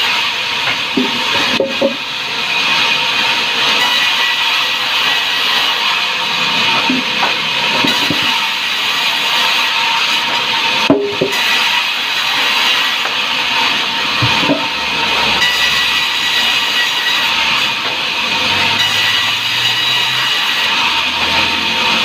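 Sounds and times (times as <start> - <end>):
saw cutting through timber: 0.0 - 22.0
sharp knock: 10.9 - 11.4.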